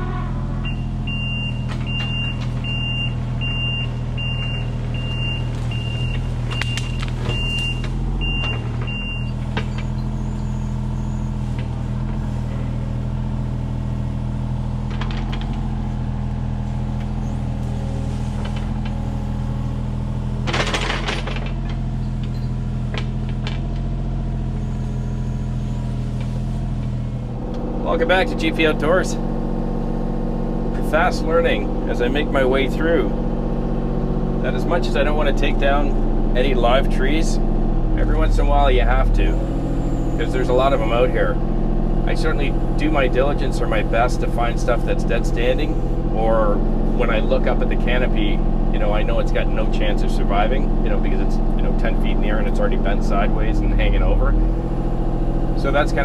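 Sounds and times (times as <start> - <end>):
excavator diesel engine running: 0.0 - 56.0
clatter: 14.8 - 16.0, 20.4 - 24.7.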